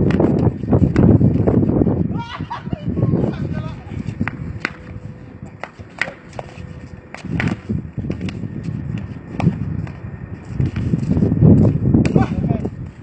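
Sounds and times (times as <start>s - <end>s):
low background rumble: 0.0s - 13.0s
footsteps on court: 5.5s - 11.8s.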